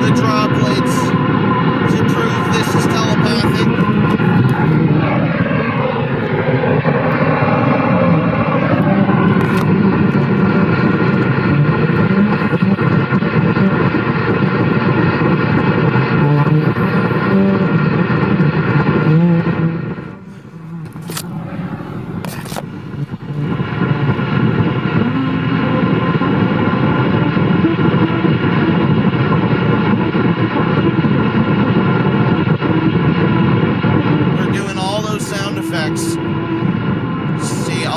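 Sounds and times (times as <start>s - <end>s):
buzzing hum of steady tones: 0.0s - 37.9s
radio static: 0.0s - 37.9s
sharp crackles: 5.8s - 37.9s.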